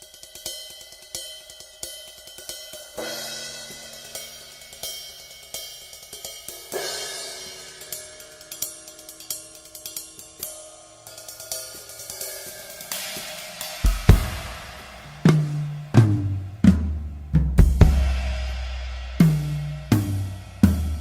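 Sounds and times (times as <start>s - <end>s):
hi-hat ticks: 0.0s - 3.0s, 7.6s - 16.0s
cymbal crash: 3.0s - 5.7s, 10.4s - 21.0s.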